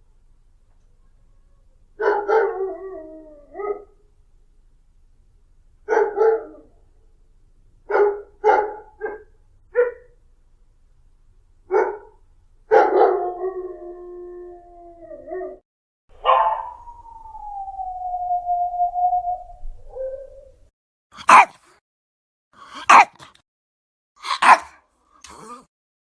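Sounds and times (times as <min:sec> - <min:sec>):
dog barking: 0:02.0 - 0:02.6, 0:05.9 - 0:06.7, 0:07.9 - 0:10.2, 0:11.7 - 0:13.4, 0:16.2 - 0:16.8, 0:21.2 - 0:21.8, 0:22.7 - 0:23.4, 0:24.2 - 0:24.8
dog howling: 0:12.9 - 0:15.6, 0:16.2 - 0:20.6.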